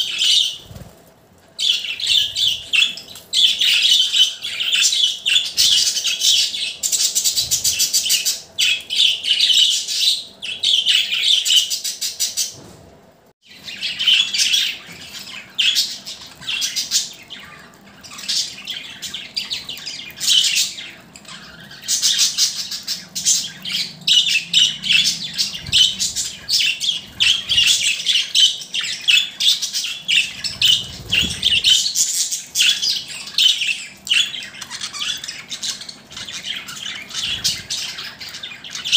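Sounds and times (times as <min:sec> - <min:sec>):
budgerigar chirping and singing: 0:13.5 - 0:38.9.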